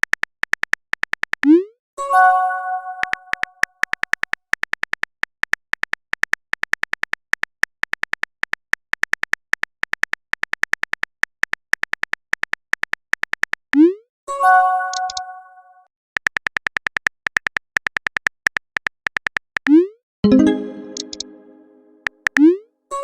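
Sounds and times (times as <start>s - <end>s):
phone keyboard typing clicks: 14.9s - 15.2s, 16.2s - 19.7s, 20.5s - 21.4s
chime notification tone: 20.2s - 22.1s.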